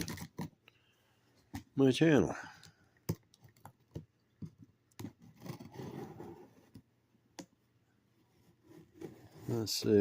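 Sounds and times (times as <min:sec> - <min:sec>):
cardboard scraping and rustling: 0:05.0 - 0:06.8, 0:08.3 - 0:10.0.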